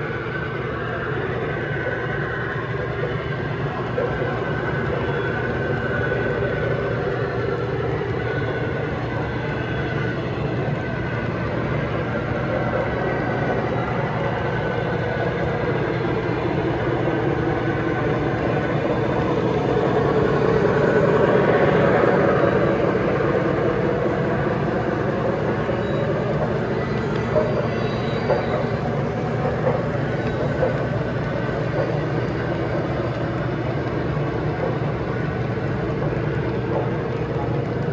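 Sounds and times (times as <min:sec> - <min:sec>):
model train rumbling on track: 0:00.0 - 0:37.9.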